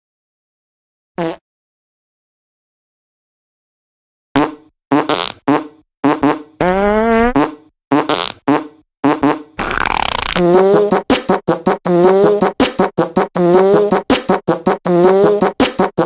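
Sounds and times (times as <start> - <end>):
fart sounds: 1.2 - 1.4, 4.4 - 16.0.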